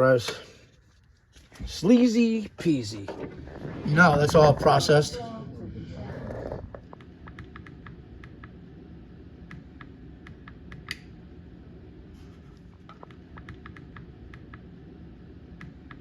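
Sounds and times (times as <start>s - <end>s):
low background rumble: 0.0s - 16.0s.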